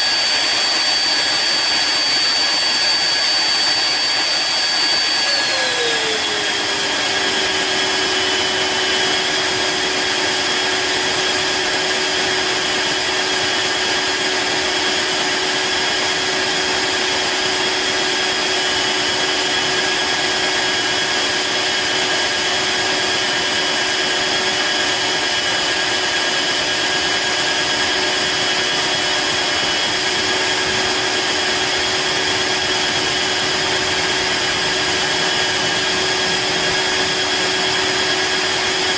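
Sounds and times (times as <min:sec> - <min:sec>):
vacuum motor whining: 0:00.0 - 0:38.9.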